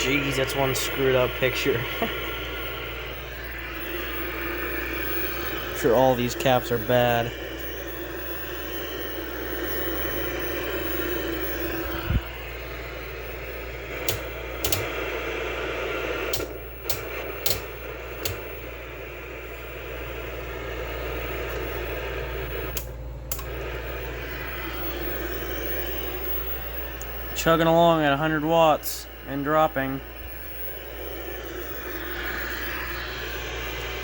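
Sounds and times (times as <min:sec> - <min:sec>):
low mains hum: 0:00.0 - 0:34.0
television static hiss: 0:00.0 - 0:34.0
sharp clicks: 0:14.0 - 0:15.0, 0:16.3 - 0:18.5.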